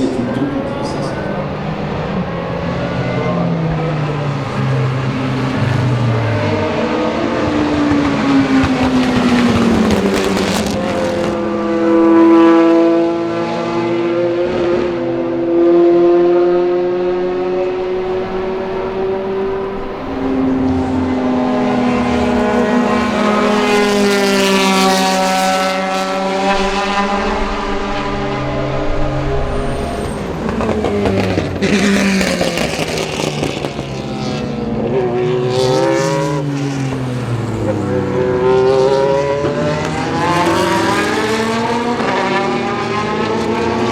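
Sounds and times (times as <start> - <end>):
race car engine: 0.0 - 43.9
exhaust crackles and pops: 8.0 - 11.4, 30.3 - 34.2
rushing noise: 27.0 - 34.2.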